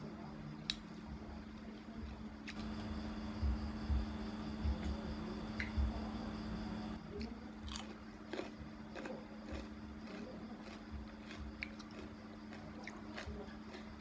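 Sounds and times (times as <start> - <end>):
steady low hum: 0.0 - 14.0
wet chewing and squishing: 7.2 - 14.0.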